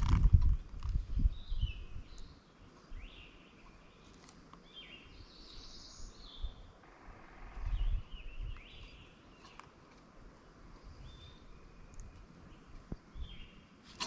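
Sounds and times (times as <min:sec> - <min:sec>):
birds chirping and whistling: 0:01.0 - 0:02.4, 0:04.7 - 0:09.6, 0:10.9 - 0:13.6.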